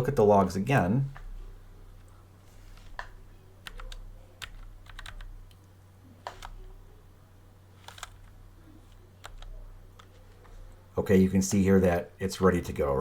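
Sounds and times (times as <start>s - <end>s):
faint low hum: 0.0s - 13.0s
keyboard typing: 2.8s - 6.8s, 7.8s - 10.6s.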